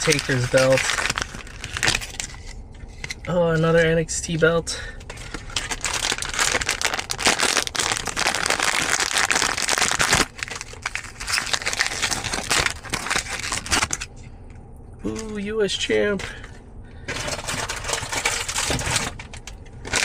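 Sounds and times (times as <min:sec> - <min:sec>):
wrapper crinkling: 0:00.0 - 0:03.1, 0:05.1 - 0:14.1, 0:17.1 - 0:20.0.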